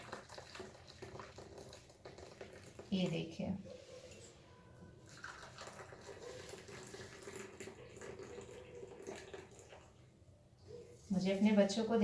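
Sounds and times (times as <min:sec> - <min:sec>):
tea trickling into cups: 0:00.0 - 0:10.3.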